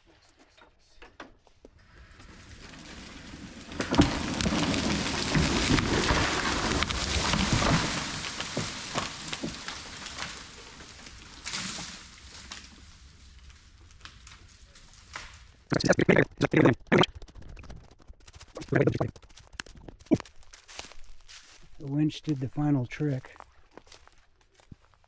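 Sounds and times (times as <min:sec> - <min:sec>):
wood crackling and snapping: 0:01.8 - 0:25.0
branches rustling: 0:01.9 - 0:16.7, 0:18.2 - 0:25.0
tree crashing to the ground: 0:02.0 - 0:15.7.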